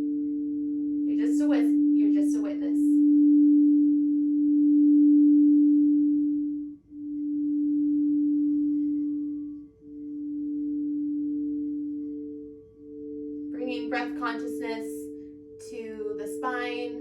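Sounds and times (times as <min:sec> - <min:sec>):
crystal singing bowl tone: 0:00.0 - 0:17.0.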